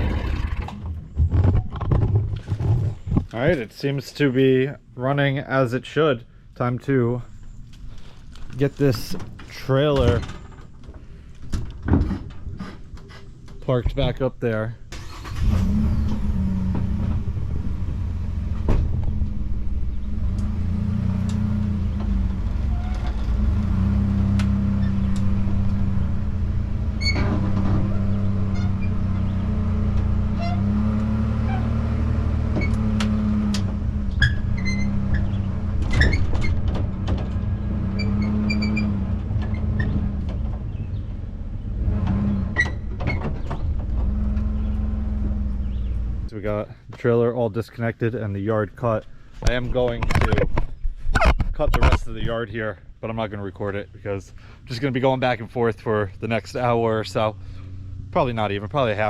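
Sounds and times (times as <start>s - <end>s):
clanks and rattles: 0.0s - 3.4s, 7.9s - 13.6s, 18.4s - 31.8s, 32.4s - 46.3s
truck engine running: 15.1s - 46.4s.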